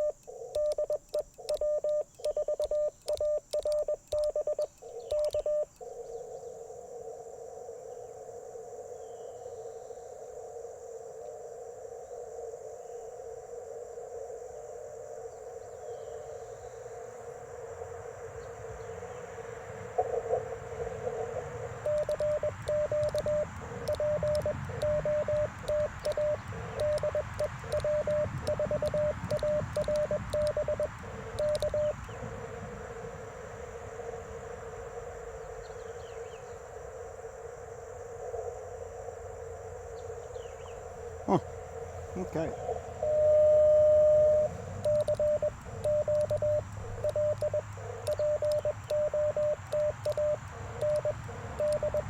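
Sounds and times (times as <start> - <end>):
morse code sidetone beeps: 0.0 - 5.7, 21.8 - 32.1, 42.2 - 52.0
radio band hiss: 42.1 - 42.7.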